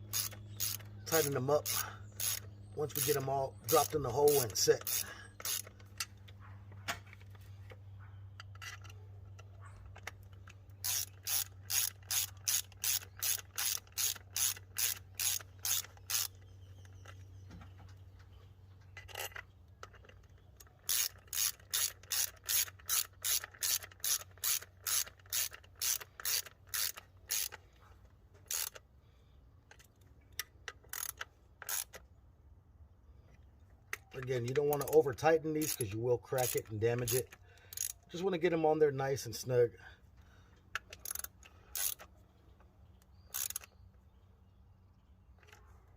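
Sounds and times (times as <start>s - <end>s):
hand ratchet clicking: 0.1s - 6.1s, 10.0s - 17.2s, 19.0s - 27.6s, 28.4s - 28.8s, 30.6s - 32.0s, 34.1s - 38.2s, 40.7s - 42.1s, 43.3s - 43.8s.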